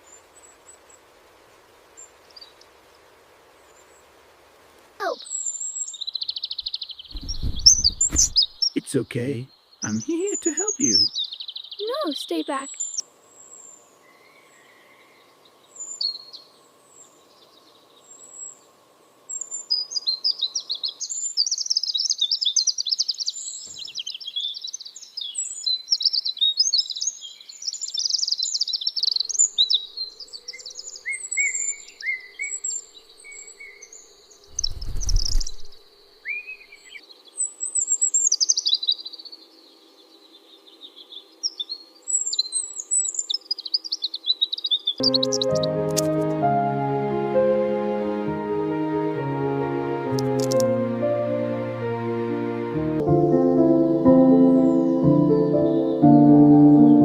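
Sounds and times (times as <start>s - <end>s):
small birds chirping: 5.0s - 46.3s
loud low rumbling thump: 7.1s - 8.6s.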